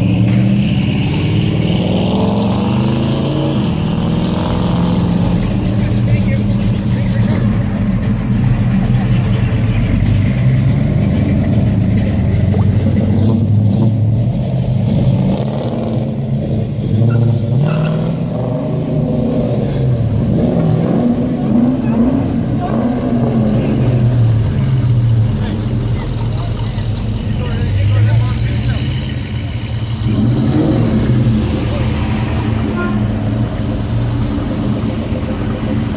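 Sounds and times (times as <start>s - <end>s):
car engines revving: 0.0s - 35.9s.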